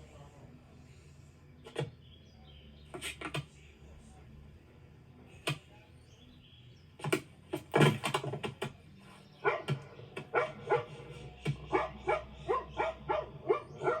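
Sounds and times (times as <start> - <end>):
dog barking: 9.4 - 14.0.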